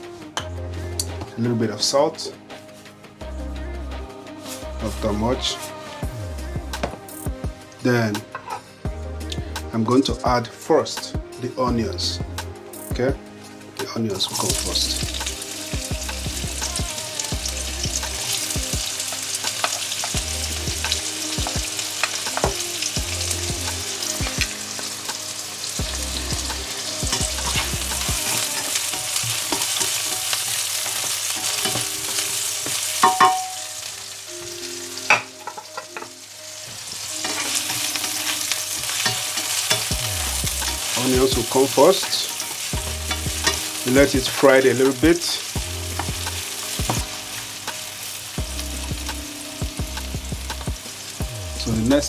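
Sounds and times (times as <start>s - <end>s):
onions sizzling in oil: 14.1s - 52.0s.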